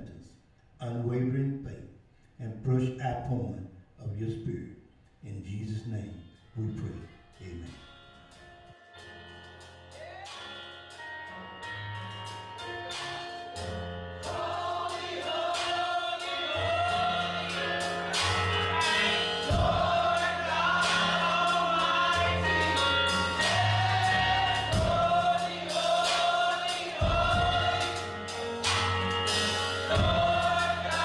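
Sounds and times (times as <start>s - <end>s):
gospel choir singing: 12.5s - 31.0s
bass line: 16.6s - 31.0s
drum beat: 18.1s - 31.0s.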